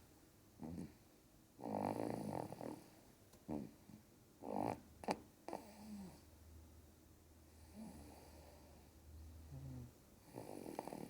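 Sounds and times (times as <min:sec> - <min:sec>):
low rumbling snore: 0:07.6 - 0:11.0.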